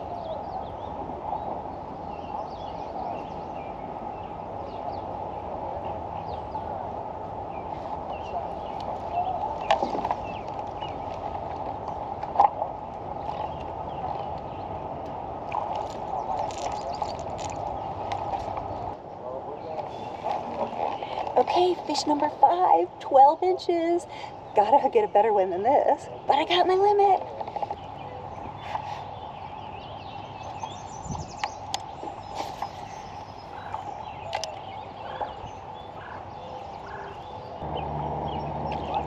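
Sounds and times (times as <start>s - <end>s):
birds chirping: 0.0s - 39.0s.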